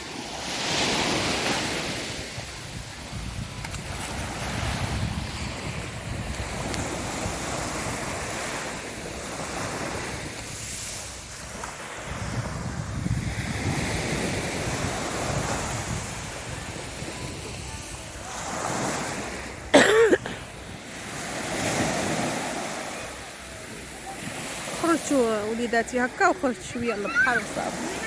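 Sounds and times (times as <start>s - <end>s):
sea waves washing onto beach: 0.0s - 28.0s
wind buffeting microphone: 1.8s - 8.5s, 9.5s - 18.3s.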